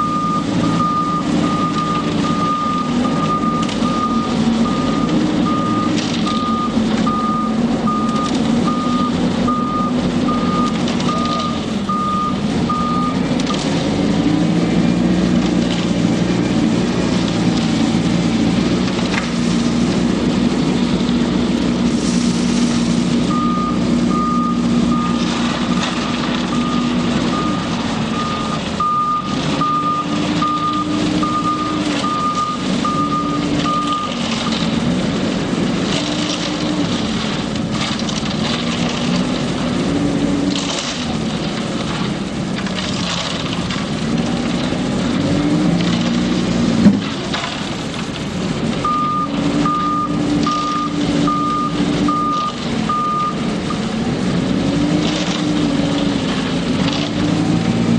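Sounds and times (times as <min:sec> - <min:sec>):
reversing alarm beeping: 0:00.0 - 0:13.2, 0:23.3 - 0:25.3, 0:26.5 - 0:34.2, 0:48.8 - 0:53.8
truck engine under varying load: 0:00.0 - 0:57.9.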